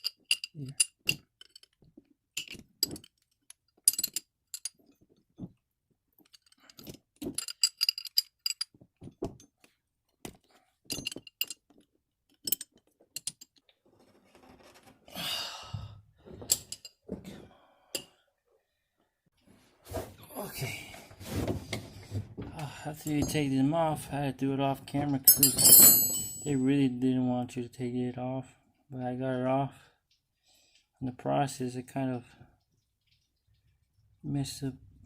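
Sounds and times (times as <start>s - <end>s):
metallic clinks of wrenches: 0.0s - 1.8s, 2.4s - 5.0s, 6.2s - 8.8s, 10.9s - 14.2s, 25.2s - 26.6s
rustling scrape: 13.8s - 15.1s, 21.1s - 22.3s.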